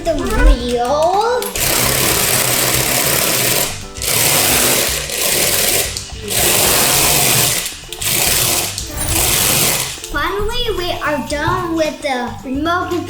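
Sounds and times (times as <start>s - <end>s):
small electric motor whirring: 1.5s - 10.1s.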